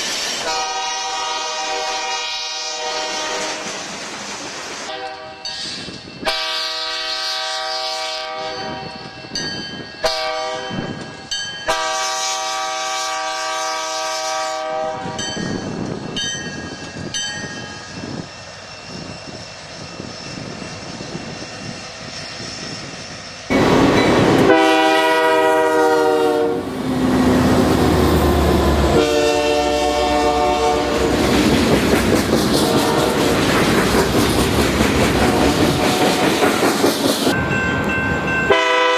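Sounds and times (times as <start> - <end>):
freight train rumbling past: 0.0 - 38.9
locomotive air horn blasts: 0.4 - 3.8, 4.9 - 5.4, 6.3 - 8.8, 10.0 - 10.8, 11.7 - 15.2, 23.5 - 31.2, 32.6 - 33.3, 38.5 - 38.9.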